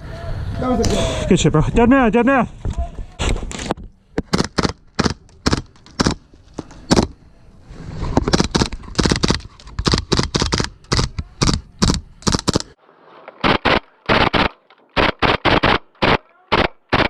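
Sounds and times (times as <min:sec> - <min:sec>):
airsoft guns firing: 0:04.2 - 0:07.2, 0:08.3 - 0:12.8, 0:13.4 - 0:17.0.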